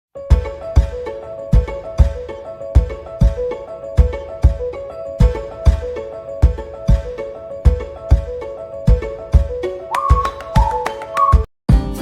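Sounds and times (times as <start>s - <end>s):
kick-drum beat: 0.3s - 11.9s
bright mallet melody: 9.9s - 11.4s.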